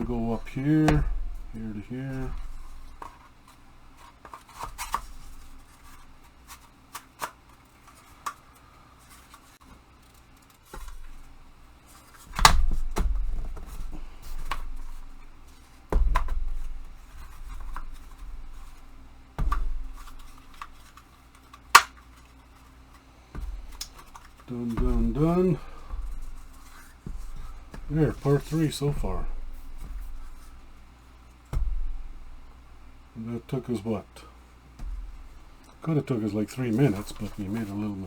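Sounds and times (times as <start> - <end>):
heavy knocks: 0.0 - 3.1, 23.4 - 30.8, 31.5 - 33.1, 34.7 - 35.7
sharp plastic snap: 12.3 - 13.6, 19.4 - 22.4.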